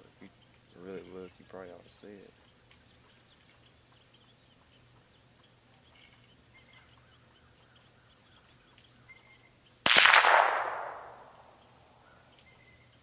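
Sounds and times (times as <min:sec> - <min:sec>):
faint bird chirps: 0:00.1 - 0:09.8, 0:11.1 - 0:13.0
rifle shot with echo: 0:09.9 - 0:11.6.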